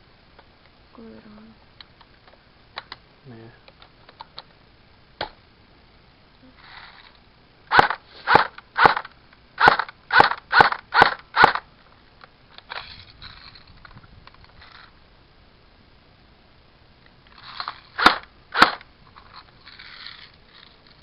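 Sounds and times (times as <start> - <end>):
faint clicks and handling noise: 1.7 - 3.0, 3.6 - 4.6, 11.8 - 15.0, 18.8 - 21.0
airsoft rifle shots: 7.7 - 11.7, 18.0 - 18.8.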